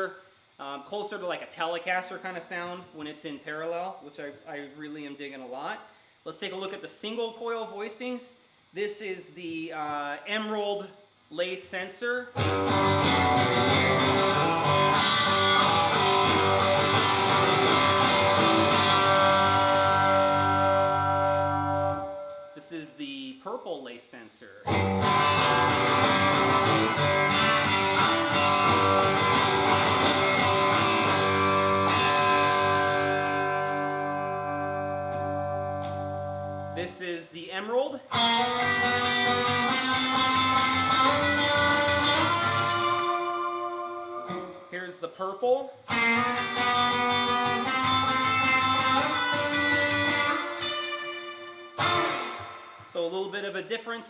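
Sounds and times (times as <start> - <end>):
overdriven electric guitar: 12.4 - 22.6, 24.6 - 36.9, 38.1 - 44.7, 45.8 - 52.9.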